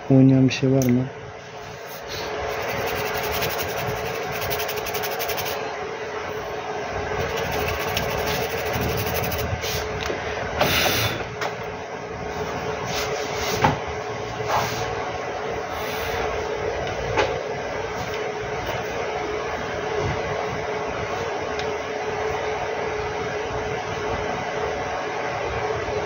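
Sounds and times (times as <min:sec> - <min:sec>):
small machine humming: 0:01.6 - 0:11.2
fast fine ticking: 0:02.5 - 0:05.6, 0:07.2 - 0:09.4.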